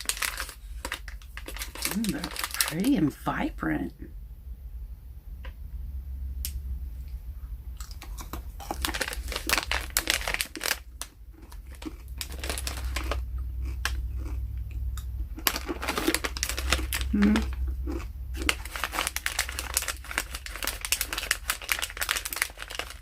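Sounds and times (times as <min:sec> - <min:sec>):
plastic bag crinkling: 0:00.0 - 0:03.2, 0:08.0 - 0:14.3, 0:15.4 - 0:23.0.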